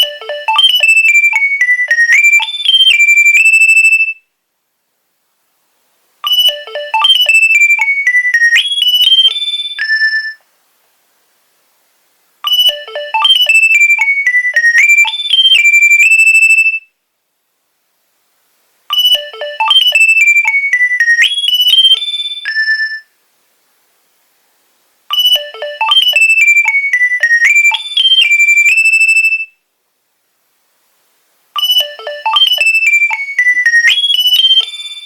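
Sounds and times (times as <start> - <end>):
mobile phone ringtone melody: 0.0 - 4.0, 6.2 - 10.4, 12.5 - 16.6, 18.9 - 23.0, 25.1 - 29.4, 31.6 - 35.0.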